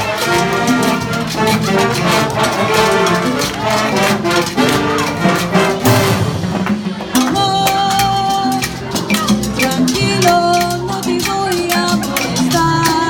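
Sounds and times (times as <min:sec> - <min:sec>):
jazz horn section playing: 0:00.0 - 0:07.0.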